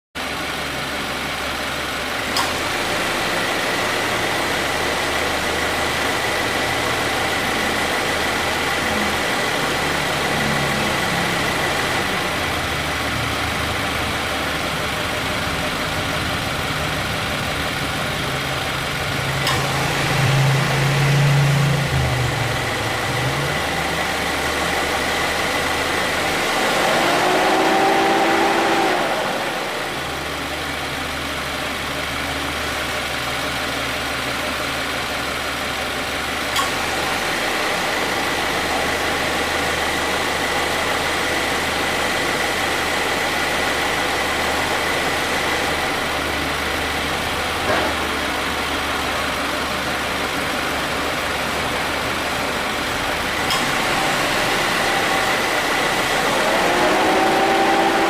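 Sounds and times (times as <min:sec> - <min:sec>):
car engine idling: 0:00.2 - 0:58.0
compressor clutch clicks: 0:53.5 - 0:54.0.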